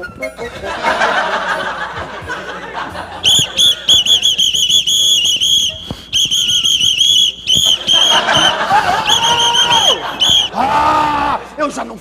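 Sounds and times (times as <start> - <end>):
whistle toots: 0.0 - 0.7, 3.2 - 10.6.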